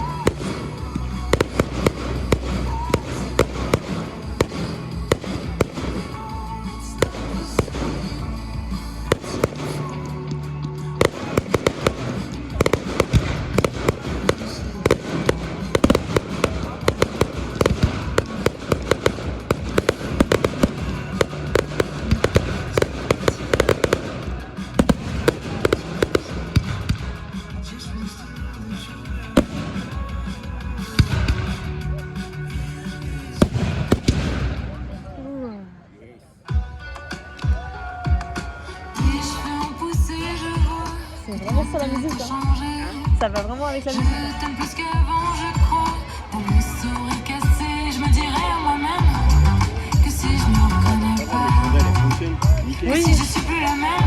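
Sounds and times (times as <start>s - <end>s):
fireworks bangs and cracks: 0.0s - 35.1s, 38.1s - 54.0s
music over loudspeakers: 0.0s - 54.0s.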